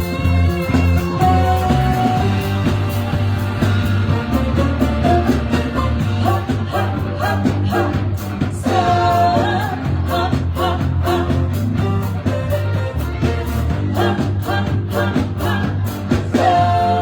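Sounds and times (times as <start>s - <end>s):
bass line: 0.0s - 17.0s
drums with cymbal beat: 0.0s - 17.0s
person singing: 4.2s - 17.0s.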